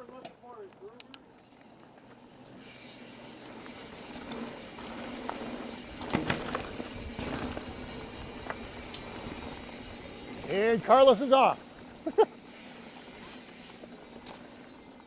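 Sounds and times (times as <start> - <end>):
bike tyres on dirt trail: 0.0 - 15.0
bike knocks and rattles: 5.2 - 10.4.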